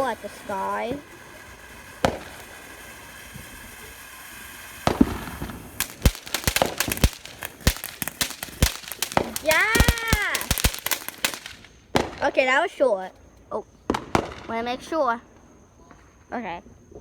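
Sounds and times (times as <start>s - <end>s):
firework bang: 0.0s - 12.6s, 13.9s - 14.7s
firecracker pops and cracks: 0.0s - 12.7s, 13.9s - 14.8s
firework hiss: 0.0s - 12.9s
firework crack: 0.0s - 16.2s.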